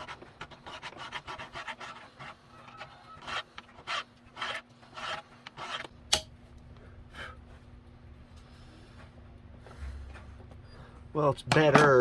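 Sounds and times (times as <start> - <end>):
hand file rasping on metal: 0.0 - 5.9.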